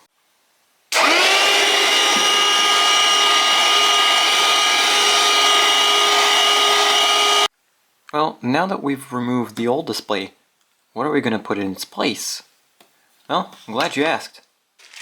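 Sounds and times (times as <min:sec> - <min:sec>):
electric motor whine with air rush: 0:01.0 - 0:07.5.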